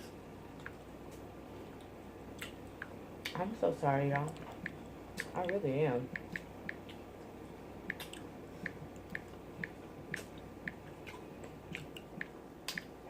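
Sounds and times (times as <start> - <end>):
person chewing with lip-smacking: 7.9 - 12.9.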